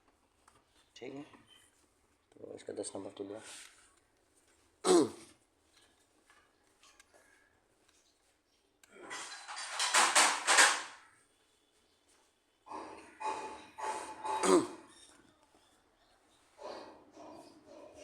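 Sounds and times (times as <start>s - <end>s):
tools and engine parts clattering: 9.0s - 11.0s, 12.7s - 15.3s.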